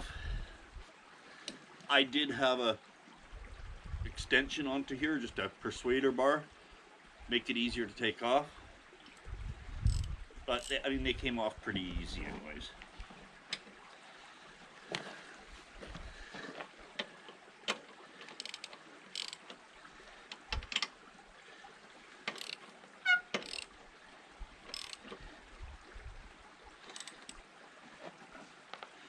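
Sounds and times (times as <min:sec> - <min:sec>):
socket ratchet clicking: 0:09.9 - 0:10.8, 0:18.3 - 0:19.5, 0:22.3 - 0:22.6, 0:23.3 - 0:23.7, 0:24.7 - 0:25.0, 0:26.9 - 0:27.4.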